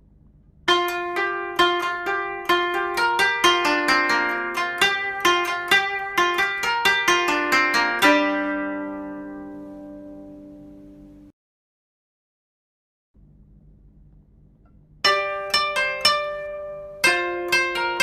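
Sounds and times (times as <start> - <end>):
gentle plucked melody: 0.7 - 11.3, 15.0 - 18.0.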